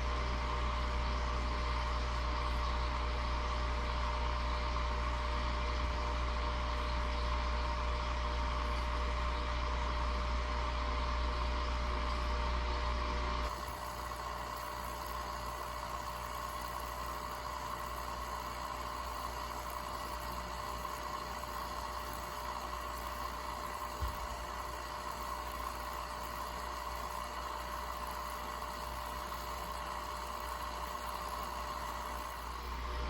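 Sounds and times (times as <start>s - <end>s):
deep machine hum: 0.0s - 20.2s, 27.7s - 33.0s.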